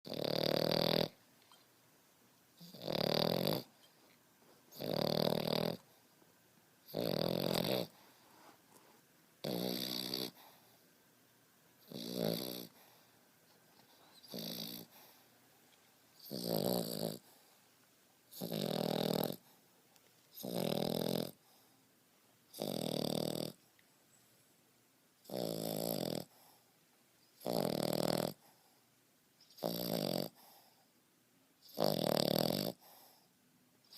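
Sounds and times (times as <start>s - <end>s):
puppy snoring: 0.0s - 1.7s, 2.6s - 4.1s, 4.7s - 6.0s, 6.8s - 10.8s, 11.8s - 13.1s, 13.8s - 15.3s, 16.2s - 17.5s, 18.3s - 19.6s, 20.3s - 21.8s, 22.5s - 23.6s, 25.2s - 26.7s, 27.4s - 30.9s, 31.6s - 33.9s
quiet breaths: 0.1s - 33.9s.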